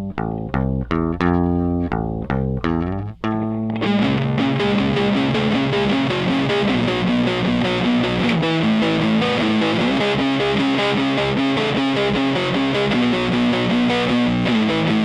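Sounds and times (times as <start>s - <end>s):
bass and drums: 0.0s - 9.1s
distorted electric guitar riffing: 0.0s - 15.0s.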